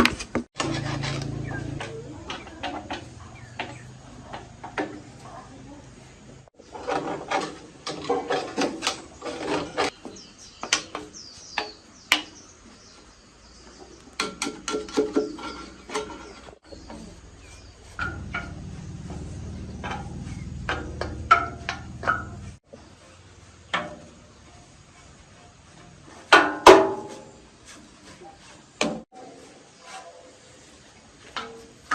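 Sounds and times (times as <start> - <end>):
steady low hum: 16.8 - 23.6.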